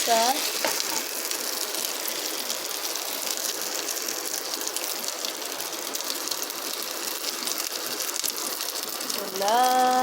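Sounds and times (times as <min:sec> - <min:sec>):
food frying in hot oil: 0:00.0 - 0:10.0.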